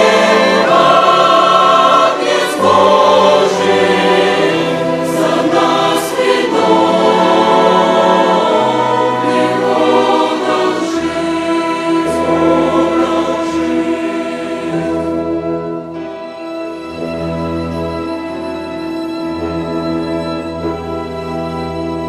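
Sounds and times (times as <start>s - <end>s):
choir singing a hymn: 0.0s - 16.1s
violin orchestra: 0.0s - 22.0s.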